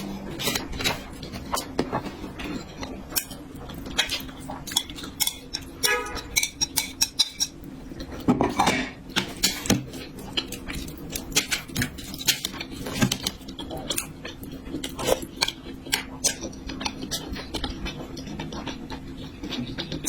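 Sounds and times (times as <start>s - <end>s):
utensils clinking against dishes: 4.0s - 7.7s.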